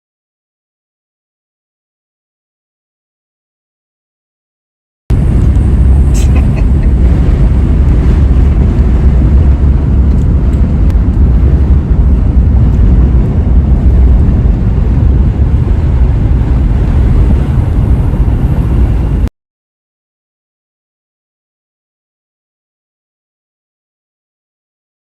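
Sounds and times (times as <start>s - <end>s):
vehicle engine and tyres rumbling: 5.1s - 19.3s.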